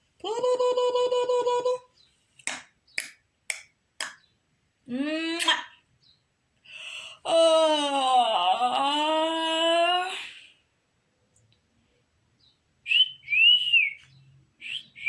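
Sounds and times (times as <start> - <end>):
long vocal tone: 0.2 - 1.9.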